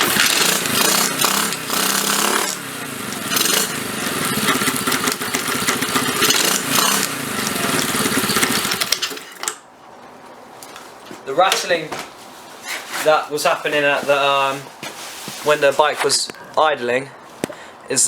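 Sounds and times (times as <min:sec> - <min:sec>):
motorbike engine idling with rattle: 0:00.0 - 0:09.6.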